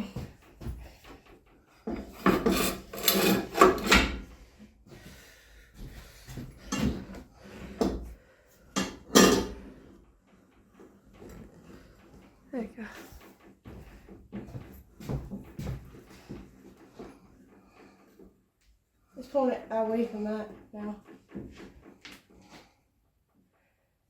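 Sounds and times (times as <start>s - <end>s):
bar clamp scraping and clunking: 1.9s - 4.3s, 8.8s - 9.9s.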